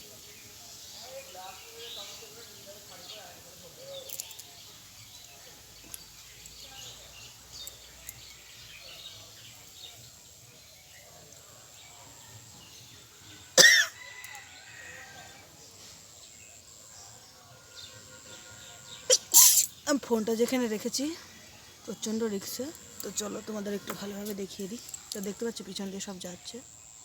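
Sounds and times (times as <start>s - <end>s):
faint outdoor background noise: 0.0s - 27.0s
loud sneeze: 13.6s - 14.0s, 19.1s - 19.8s.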